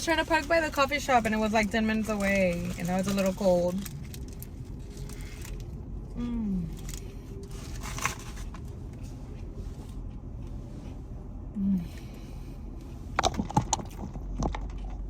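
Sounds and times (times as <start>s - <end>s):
car interior rumble: 0.0s - 15.0s
person humming: 6.2s - 6.8s, 11.6s - 12.0s.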